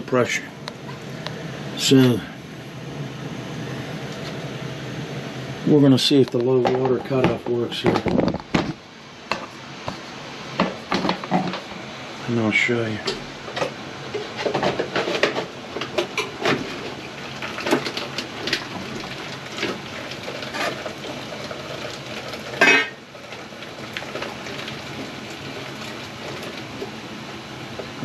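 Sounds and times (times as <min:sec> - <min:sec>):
hiss of running water: 0:15.6 - 0:28.0.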